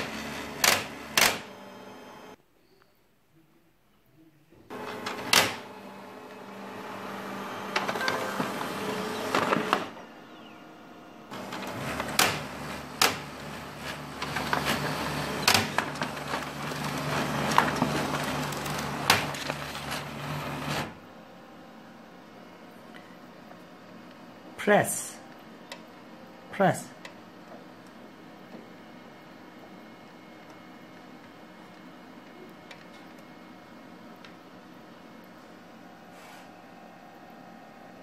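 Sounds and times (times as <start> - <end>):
printer gears clicking and clunking: 0.0 - 1.5, 4.7 - 5.7, 11.3 - 20.9
laser printer motor hum: 4.7 - 24.2.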